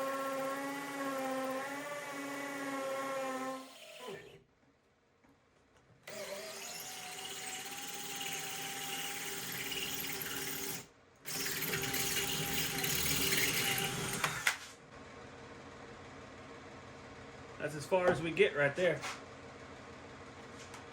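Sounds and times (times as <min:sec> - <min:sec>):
hammer drill boring into concrete: 0:00.0 - 0:04.4, 0:06.1 - 0:14.6.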